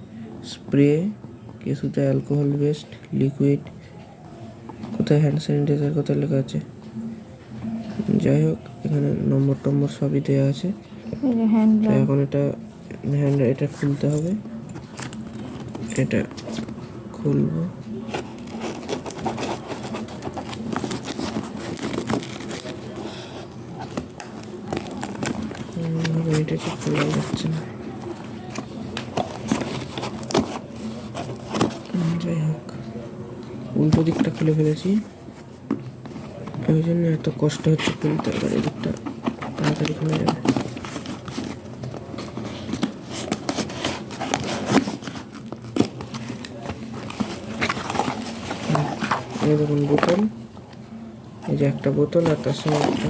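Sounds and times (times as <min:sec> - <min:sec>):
plastic package crinkling: 0:18.1 - 0:27.7
packaging being torn open: 0:23.7 - 0:25.7.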